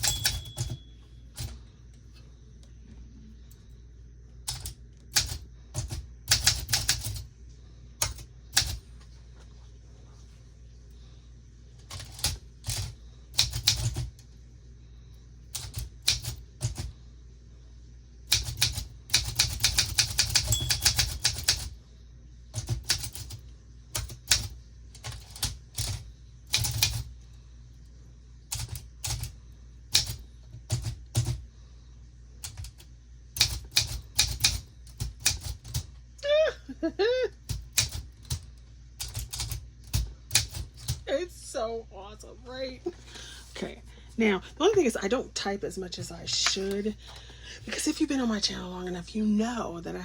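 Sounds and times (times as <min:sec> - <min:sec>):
typewriter keys striking: 0:00.0 - 0:00.8, 0:04.5 - 0:07.2, 0:11.9 - 0:14.1, 0:15.6 - 0:16.9, 0:18.3 - 0:21.7, 0:22.6 - 0:23.4, 0:24.0 - 0:27.0, 0:33.4 - 0:35.8, 0:37.5 - 0:38.4, 0:39.0 - 0:41.0.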